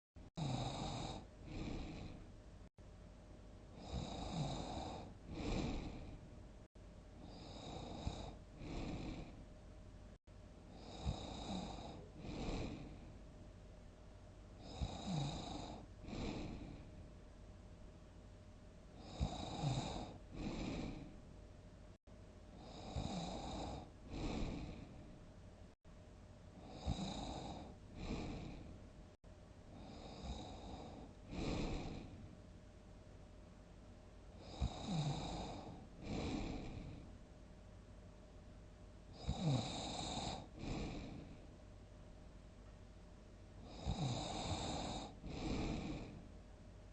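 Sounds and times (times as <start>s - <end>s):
person snoring: 0.3s - 2.2s, 3.7s - 6.2s, 7.2s - 9.4s, 10.7s - 13.1s, 14.6s - 16.9s, 19.0s - 21.1s, 22.6s - 25.1s, 26.6s - 28.8s, 29.7s - 32.2s, 34.4s - 37.1s, 39.1s - 41.4s, 43.6s - 46.2s.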